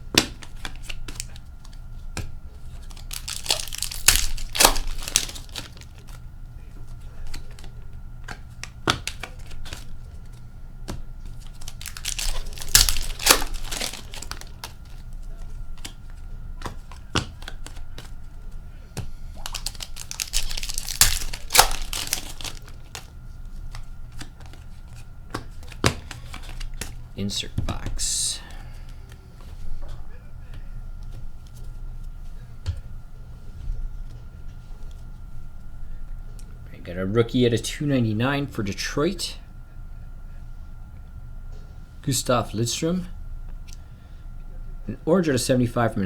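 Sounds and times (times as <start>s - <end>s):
cards clicking: 0.1s - 6.2s, 7.2s - 16.0s, 19.0s - 23.1s, 23.7s - 27.0s
wrappers tearing and crinkling: 2.8s - 6.2s, 11.3s - 15.2s, 19.4s - 23.1s.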